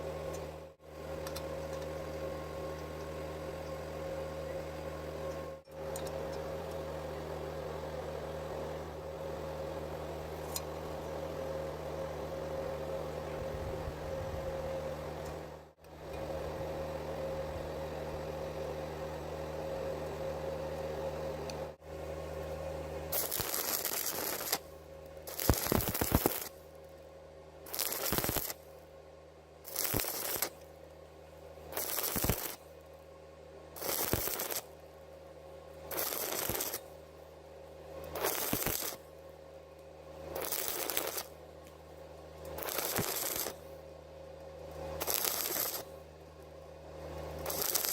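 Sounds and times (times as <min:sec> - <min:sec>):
welding machine humming: 0:14.0 - 0:27.0, 0:27.6 - 0:28.9, 0:29.6 - 0:33.0, 0:33.7 - 0:35.1, 0:35.7 - 0:39.2, 0:40.1 - 0:47.9
welding arc crackling: 0:23.1 - 0:26.6, 0:27.7 - 0:28.7, 0:29.7 - 0:30.7, 0:31.7 - 0:32.6, 0:33.8 - 0:34.7, 0:35.9 - 0:36.9, 0:38.1 - 0:39.1, 0:40.3 - 0:41.4, 0:42.5 - 0:43.7, 0:45.0 - 0:46.0, 0:47.3 - 0:47.9.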